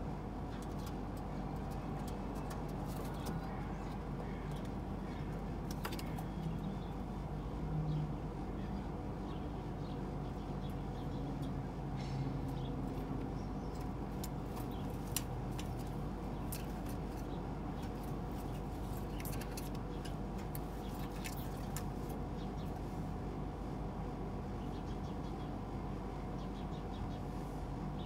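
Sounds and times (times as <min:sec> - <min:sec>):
steady background hum: 0:00.0 - 0:28.0
pigeon clicks and scratches: 0:00.4 - 0:07.0, 0:12.3 - 0:22.9.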